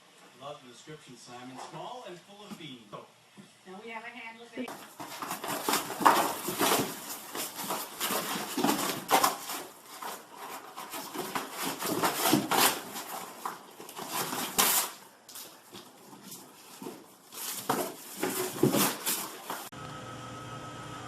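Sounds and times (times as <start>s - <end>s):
hard objects clattering and scraping: 4.7s - 19.7s.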